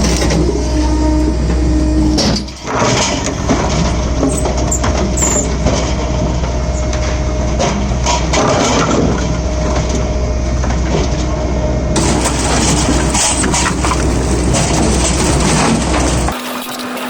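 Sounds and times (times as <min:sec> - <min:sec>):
firewood processor drone: 0:00.0 - 0:17.0
logs cracking and crunching: 0:12.0 - 0:16.4.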